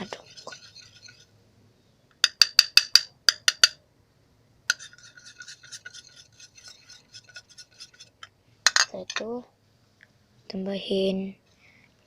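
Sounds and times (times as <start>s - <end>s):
stirring thick sticky slime: 0.0s - 1.4s, 4.7s - 8.3s
utensil tapping a container: 2.2s - 3.8s.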